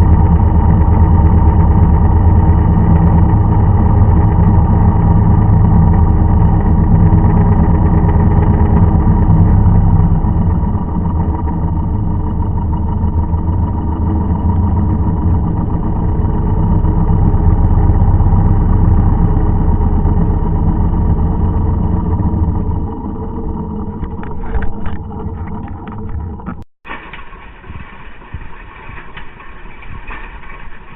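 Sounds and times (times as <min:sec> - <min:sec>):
farm machine engine running: 0:00.0 - 0:30.9.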